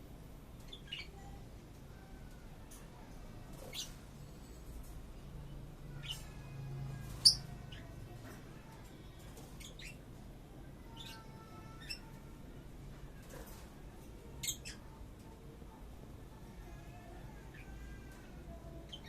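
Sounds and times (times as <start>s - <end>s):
birds chirping and squeaking: 0.6s - 1.4s, 3.4s - 5.0s, 5.8s - 10.2s, 10.8s - 12.2s, 13.2s - 15.3s, 16.9s - 19.0s.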